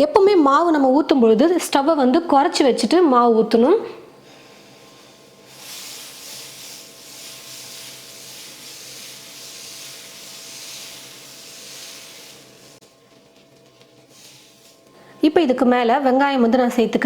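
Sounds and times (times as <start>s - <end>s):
batter sizzling on a griddle: 4.8s - 12.8s, 14.0s - 14.9s.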